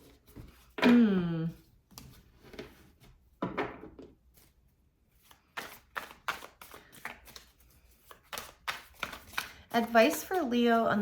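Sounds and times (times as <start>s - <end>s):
cards shuffling and rustling: 4.3s - 10.5s.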